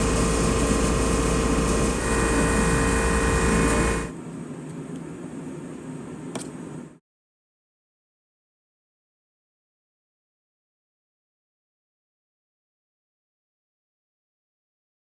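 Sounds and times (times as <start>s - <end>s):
router spindle whining: 0.0s - 4.1s.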